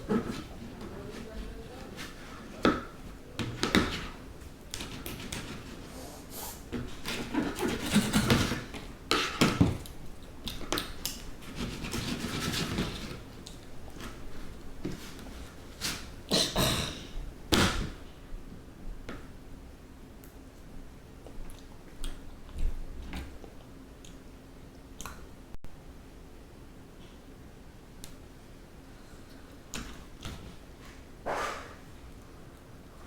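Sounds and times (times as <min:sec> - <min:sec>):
rustling and handling noise: 0:00.0 - 0:16.5.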